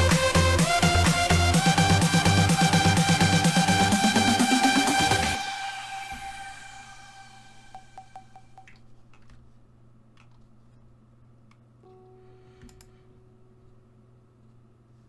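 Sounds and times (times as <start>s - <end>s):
electronic note echoing: 0.0s - 8.8s.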